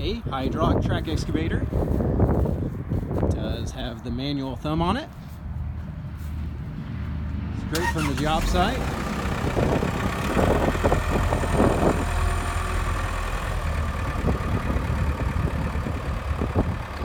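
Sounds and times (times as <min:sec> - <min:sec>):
excavator diesel engine running: 0:07.6 - 0:17.0.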